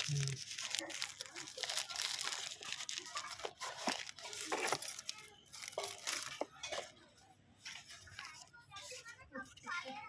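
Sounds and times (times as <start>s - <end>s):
packaging rustling and tearing: 0.0s - 6.9s.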